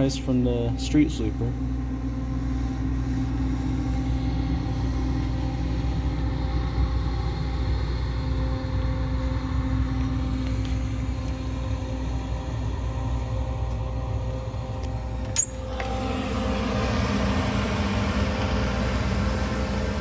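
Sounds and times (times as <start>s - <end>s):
vacuum fan running: 0.0s - 20.0s
wood chipper running: 15.7s - 20.0s.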